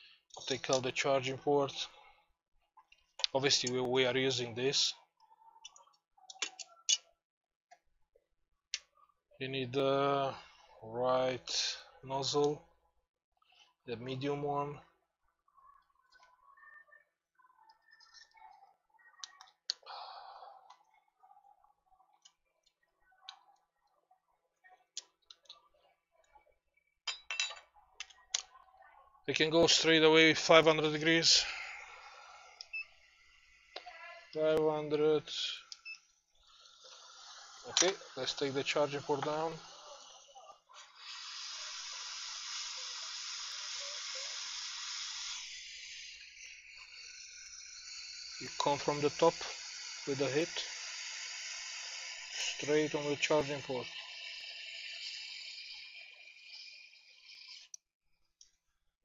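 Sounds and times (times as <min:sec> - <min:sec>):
small tools clicking and tapping: 0:05.6 - 0:07.1
hot air station hissing: 0:29.7 - 0:35.7, 0:36.4 - 0:57.7.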